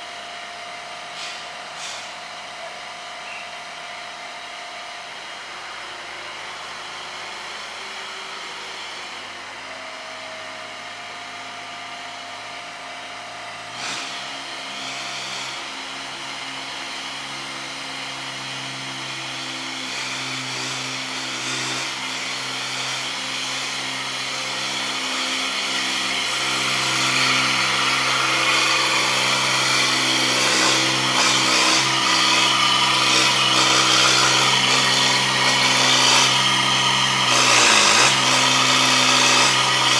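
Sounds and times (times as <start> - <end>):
engine running steadily: 0.0 - 19.2.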